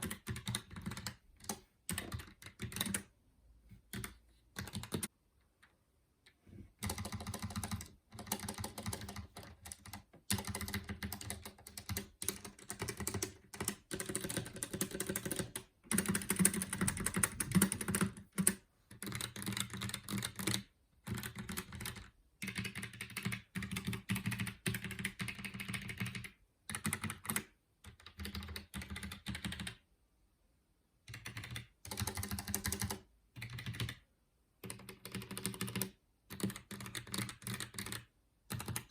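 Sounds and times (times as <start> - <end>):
mechanical keyboard typing: 0.0 - 3.1, 3.8 - 5.1, 6.8 - 29.8, 31.1 - 34.0, 34.6 - 38.9.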